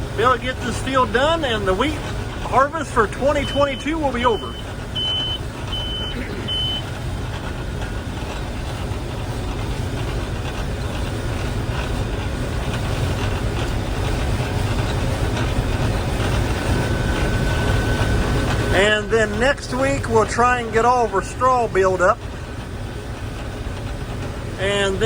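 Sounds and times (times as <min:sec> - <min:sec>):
combine harvester rumble: 0:00.0 - 0:25.0
short high beeps: 0:03.4 - 0:06.9.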